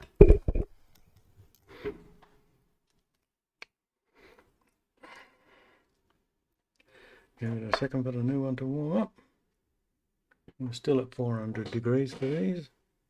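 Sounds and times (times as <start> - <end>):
knocks and clicks of handling: 0.0 - 0.7
knock with ringing tone: 0.2 - 0.6.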